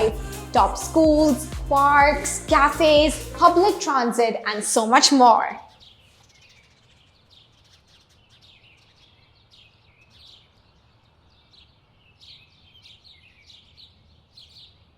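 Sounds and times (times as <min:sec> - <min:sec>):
faint birds chirping: 0:05.6 - 0:14.9.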